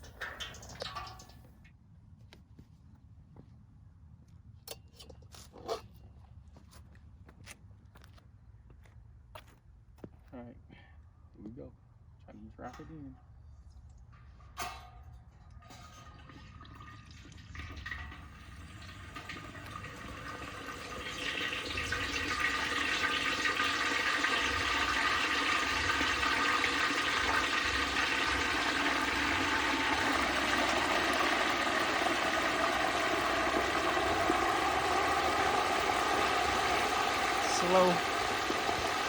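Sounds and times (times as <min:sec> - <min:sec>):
frying oil bubbling and sizzling: 0:00.0 - 0:01.6, 0:15.8 - 0:39.0.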